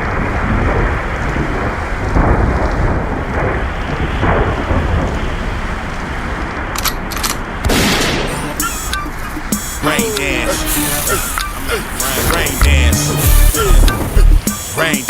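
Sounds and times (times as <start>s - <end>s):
rumbling thunder: 0.0s - 6.7s
heavy rain: 0.0s - 15.0s.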